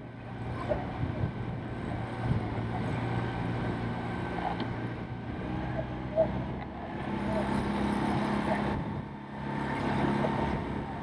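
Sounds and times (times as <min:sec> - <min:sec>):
boat engine running: 0:00.2 - 0:11.0.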